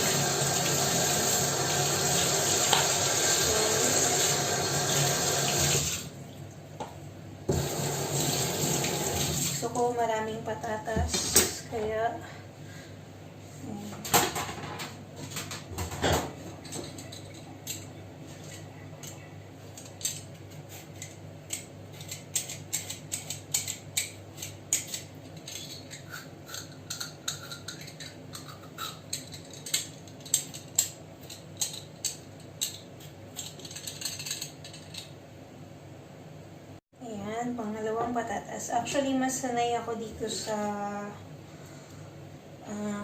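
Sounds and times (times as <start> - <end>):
knife scraping potato: 20.5 - 29.7.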